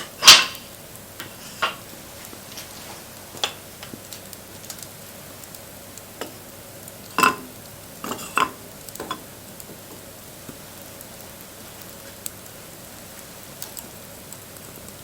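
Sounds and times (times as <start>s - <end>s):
wood knocking on fire: 0.0s - 2.7s, 3.3s - 4.8s
bonfire crackling and popping: 0.0s - 15.0s.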